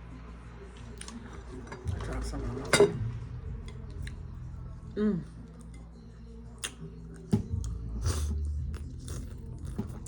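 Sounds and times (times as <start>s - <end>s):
mouth smacking and chewing: 6.6s - 10.0s.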